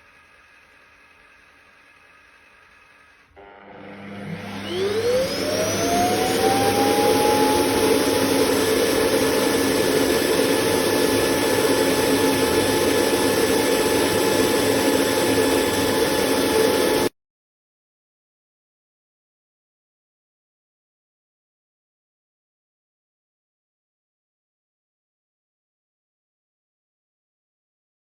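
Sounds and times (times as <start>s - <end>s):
robot vacuum suction motor whine: 0.0s - 17.1s.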